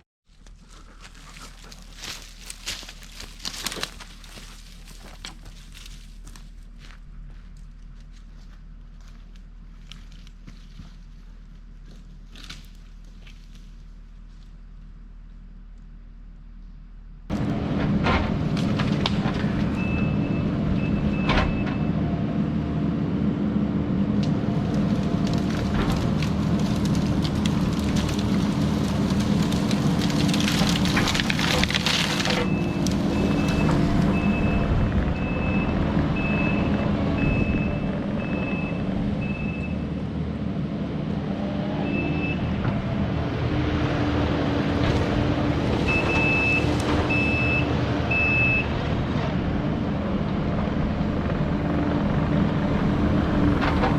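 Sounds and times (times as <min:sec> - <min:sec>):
heavy machinery diesel engine: 0:00.4 - 0:53.9
backup alarm beeping: 0:32.4 - 0:39.8, 0:45.9 - 0:48.7.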